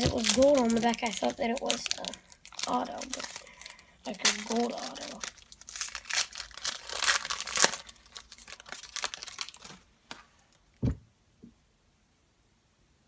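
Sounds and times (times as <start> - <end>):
foil wrapper crinkling and tearing: 0.0 - 10.6
dull thud on table: 10.8 - 11.0.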